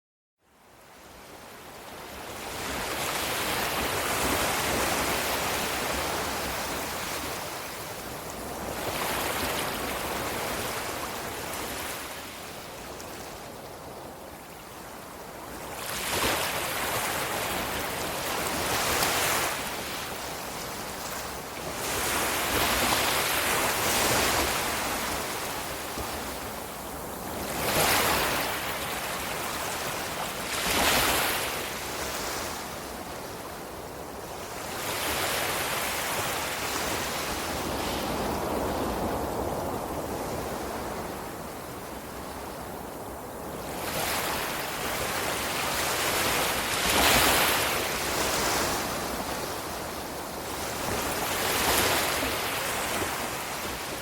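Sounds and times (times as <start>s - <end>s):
ocean waves breaking: 15.3s - 33.0s, 43.6s - 54.0s.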